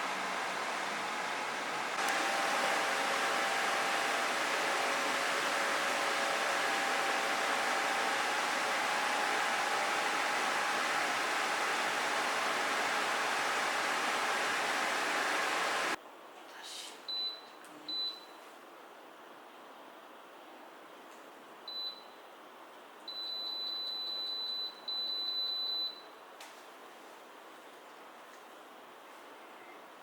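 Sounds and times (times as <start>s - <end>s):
air conditioner fan blowing: 0.0s - 16.0s.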